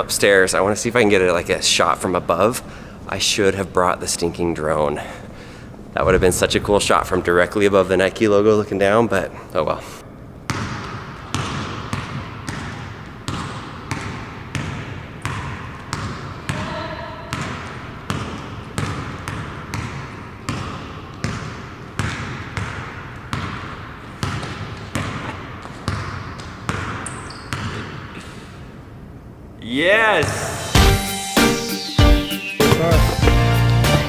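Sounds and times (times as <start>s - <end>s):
basketball bouncing on hard floor: 10.5s - 16.7s, 17.3s - 28.0s, 32.7s - 33.5s.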